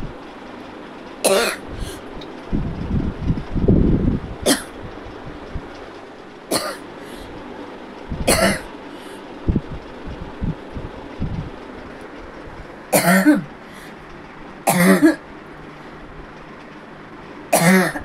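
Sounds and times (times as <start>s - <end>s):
person coughing: 1.3s - 2.0s, 4.5s - 4.7s, 6.5s - 7.2s, 8.3s - 8.7s, 13.0s - 13.5s, 14.7s - 15.2s, 17.6s - 18.0s
low rumble: 1.7s - 5.8s, 9.4s - 12.7s.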